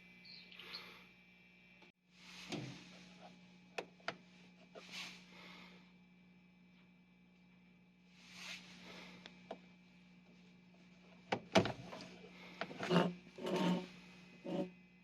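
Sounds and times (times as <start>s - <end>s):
steady low hum: 0.0s - 15.0s
soft rustle: 8.1s - 9.1s.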